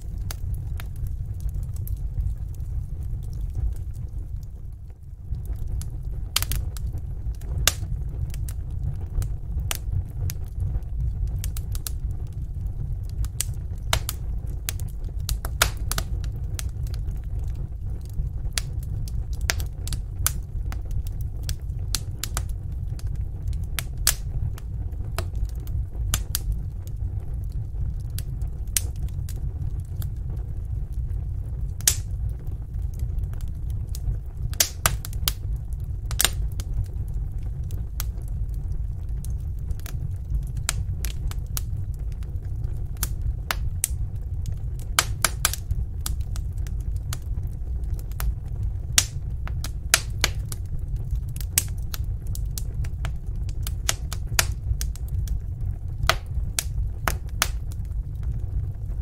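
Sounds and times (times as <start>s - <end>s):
low rumble of flames: 0.0s - 59.0s
wood fire crackling and popping: 0.0s - 59.0s.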